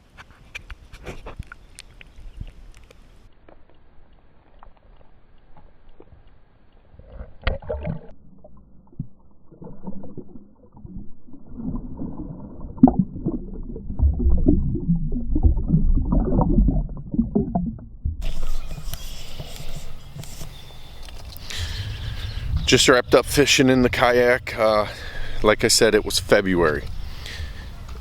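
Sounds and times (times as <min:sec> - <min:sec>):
water sloshing around kayak: 0:18.2 - 0:22.6.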